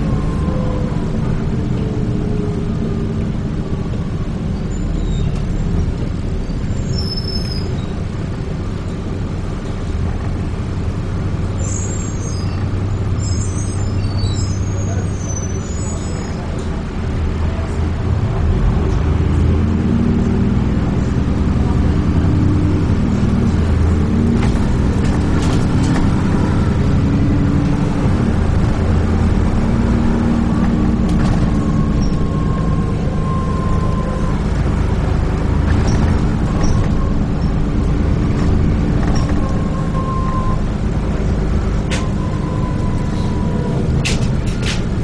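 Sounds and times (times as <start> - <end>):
bus engine drone: 0.0 - 45.0
road noise: 0.0 - 45.0
rattles and clicks: 23.5 - 26.6, 30.4 - 32.4, 34.5 - 40.0, 43.8 - 45.0.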